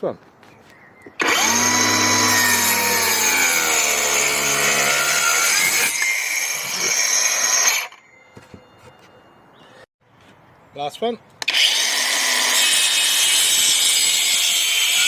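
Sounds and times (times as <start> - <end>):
circular saw cutting timber: 1.2 - 8.0, 11.4 - 15.0.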